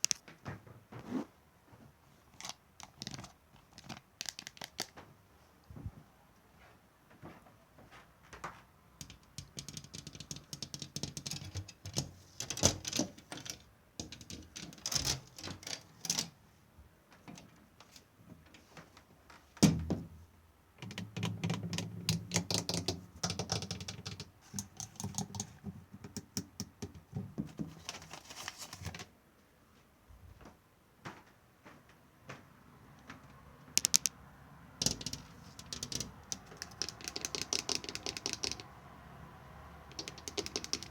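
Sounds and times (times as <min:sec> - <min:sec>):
rapid clicking taps: 0:09.0 - 0:12.1, 0:34.8 - 0:38.7, 0:39.9 - 0:40.9.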